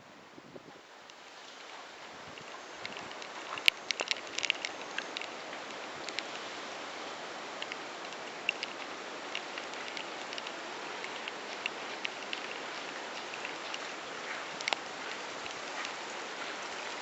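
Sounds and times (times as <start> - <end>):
water dripping and spattering: 1.0 - 17.0
drops ticking on hard surfaces: 7.6 - 17.0.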